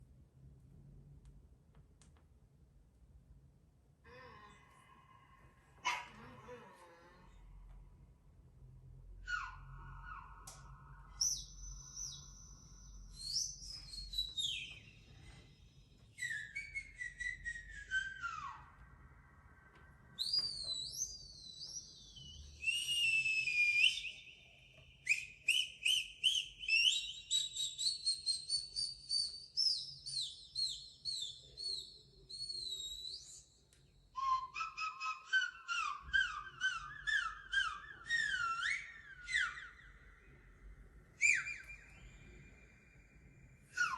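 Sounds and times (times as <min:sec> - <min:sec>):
high whistle-like tones: 0:09.3 - 0:30.4, 0:31.7 - 0:43.9.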